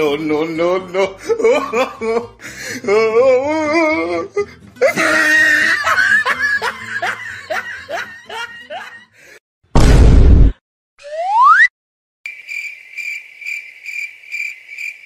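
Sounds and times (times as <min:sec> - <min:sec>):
person laughing: 0:00.5 - 0:09.2.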